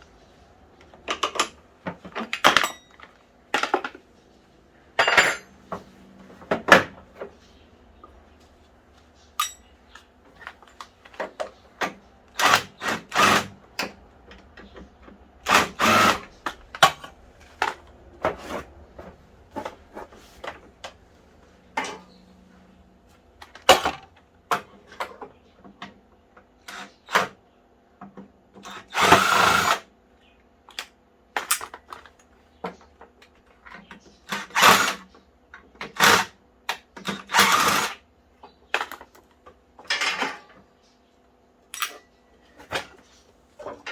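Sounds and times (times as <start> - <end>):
metal parts and tools clinking: 2.2 - 4.0, 5.0 - 5.6, 9.3 - 11.2, 38.7 - 40.6, 41.7 - 42.9
cordless drill bursts: 12.4 - 13.5, 15.5 - 16.3, 28.8 - 29.9, 34.4 - 35.0, 37.2 - 38.0.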